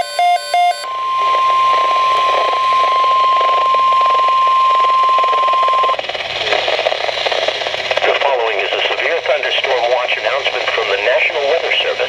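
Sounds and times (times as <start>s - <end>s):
steady pure alarm tone: 0.0s - 6.0s
radio hiss: 0.9s - 12.0s.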